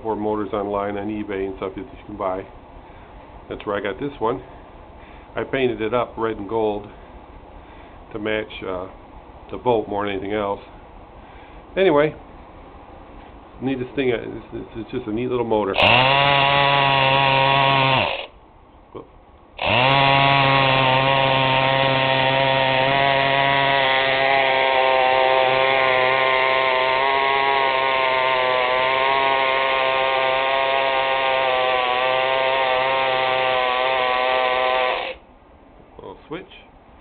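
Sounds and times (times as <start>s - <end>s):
electric toy motor buzzing: 15.8s - 18.3s, 19.6s - 35.2s.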